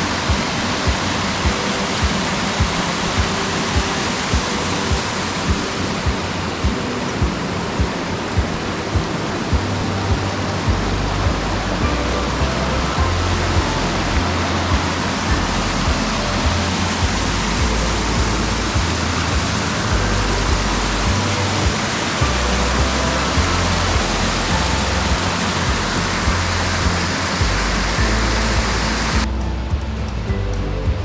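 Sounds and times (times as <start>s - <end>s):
background music with bass: 0.0s - 31.0s
mountain stream rushing: 0.0s - 31.0s.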